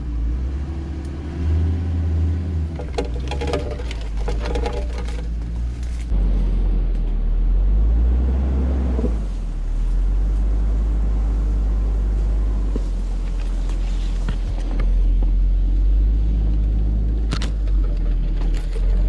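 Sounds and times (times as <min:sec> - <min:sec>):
truck engine running low: 0:00.0 - 0:19.0
tyres rolling on dirt road: 0:00.0 - 0:19.0.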